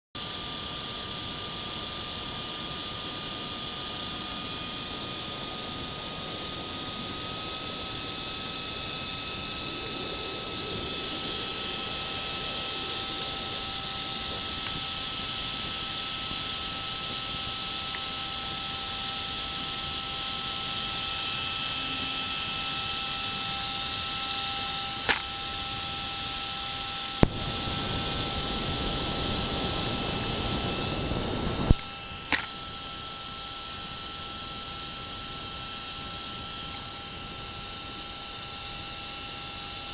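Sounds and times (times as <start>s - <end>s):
servo whine: 0.2s - 39.9s
sharp clicks: 27.0s - 29.2s.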